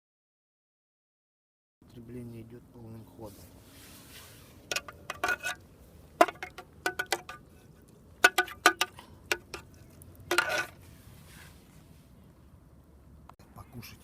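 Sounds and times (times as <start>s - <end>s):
utensil scraping metal: 4.0s - 5.6s, 6.2s - 10.9s
utensil tapping metal cookware: 4.7s - 5.6s, 6.2s - 7.4s, 8.2s - 10.8s.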